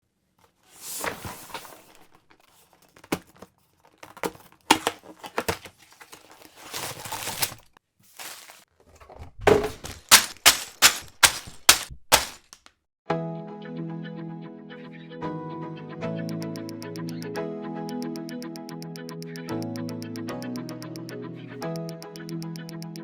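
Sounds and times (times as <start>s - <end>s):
clatter of plastic pieces: 0.7s - 12.7s
plastic bags crinkling and tearing: 1.8s - 8.7s, 9.5s - 12.7s.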